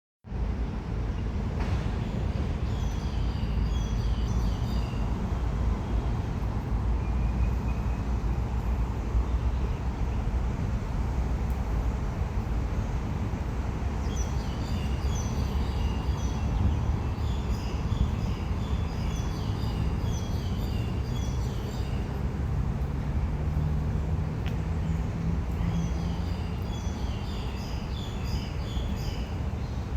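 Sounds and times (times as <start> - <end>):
small birds chirping: 24.4 - 29.9.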